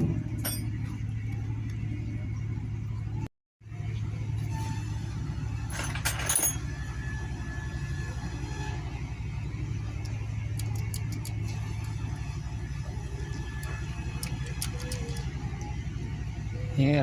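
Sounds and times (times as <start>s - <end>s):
low pulsing motor hum: 0.0s - 17.0s
metal clinks of tools: 5.7s - 6.7s.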